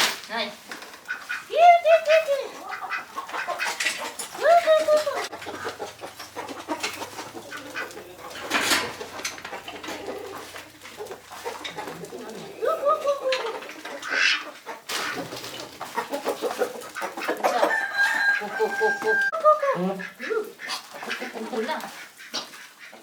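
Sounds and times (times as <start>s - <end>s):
chickens clucking: 0.4s - 23.0s
drawn-out falling chicken call: 1.0s - 21.2s.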